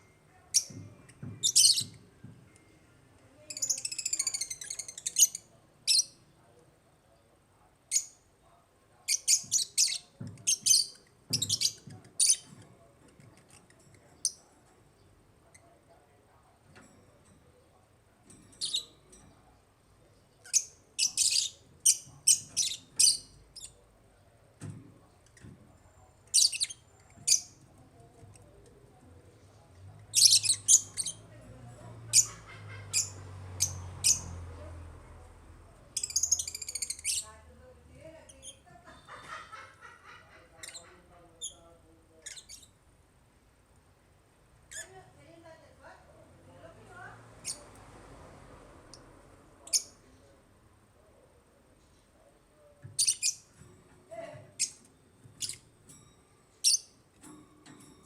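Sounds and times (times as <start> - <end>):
birds chirping: 3.4 - 6.2, 9.1 - 12.6, 20.4 - 23.8, 24.6 - 28.5, 29.7 - 34.4, 35.8 - 37.4, 52.8 - 53.6.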